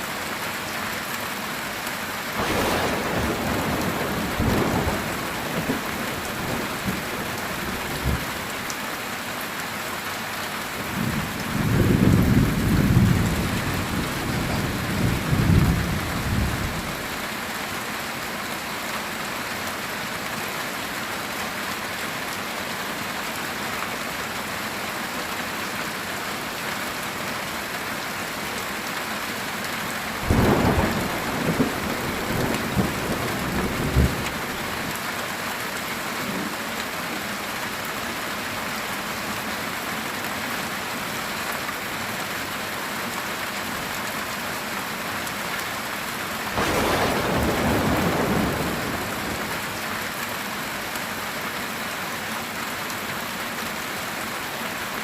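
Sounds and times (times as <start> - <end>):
heavy rain on a tin roof: 0.0 - 55.0
thunder rumbling: 2.4 - 8.4, 10.9 - 17.1, 30.2 - 34.8, 46.6 - 49.8.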